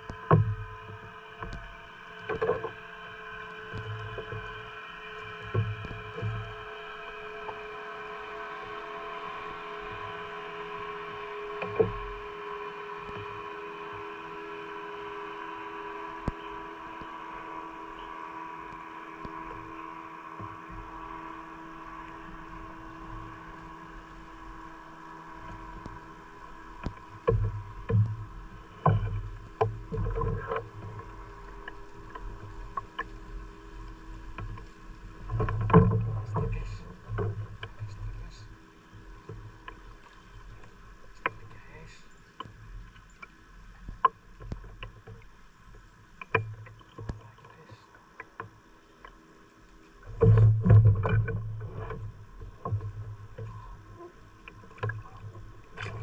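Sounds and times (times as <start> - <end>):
boat engine droning: 0.0 - 56.0
low knocks and thumps: 34.3 - 38.4, 50.0 - 53.9.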